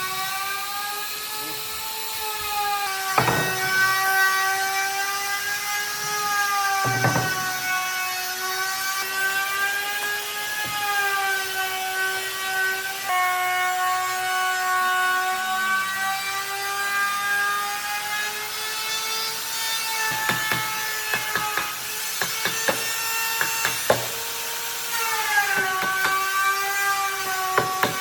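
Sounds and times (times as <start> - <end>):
power tool motor whining: 0.0 - 14.7
sharp knocks: 3.2 - 4.0, 6.8 - 7.7, 20.1 - 24.2.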